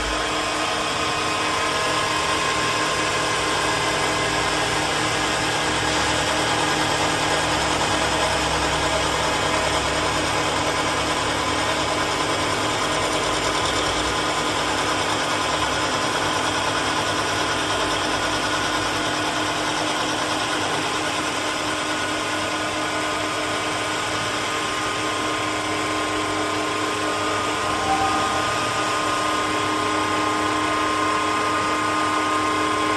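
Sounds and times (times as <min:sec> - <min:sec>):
deep hum: 0:00.0 - 0:00.8, 0:27.3 - 0:30.5
lathe machine whine over hiss: 0:25.9 - 0:32.8.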